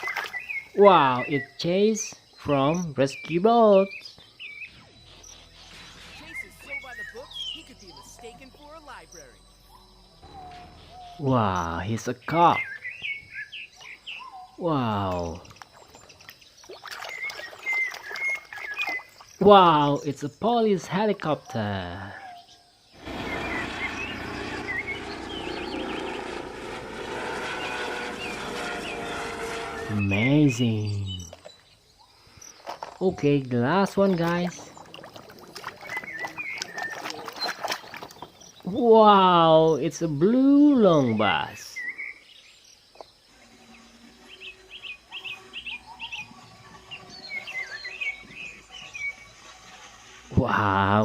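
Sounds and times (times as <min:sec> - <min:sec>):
birds chirping: 0:00.0 - 0:51.0
helicopter rotor and engine: 0:23.0 - 0:30.9.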